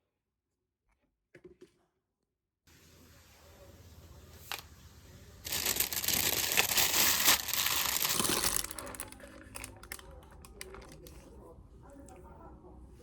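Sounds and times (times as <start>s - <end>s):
wrapping crinkling and rustling: 5.4s - 11.4s.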